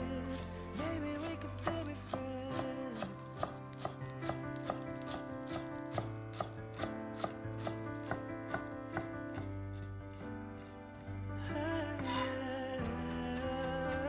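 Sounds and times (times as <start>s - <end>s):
instrumental background music: 0.0s - 14.0s
knife chopping on cutting board: 1.7s - 10.7s.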